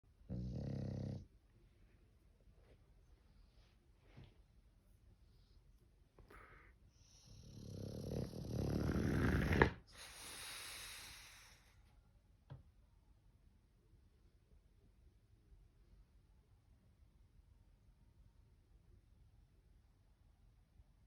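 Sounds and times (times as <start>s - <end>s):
dog snoring: 0.2s - 1.3s, 7.0s - 11.3s
breathy exhale: 9.9s - 11.8s.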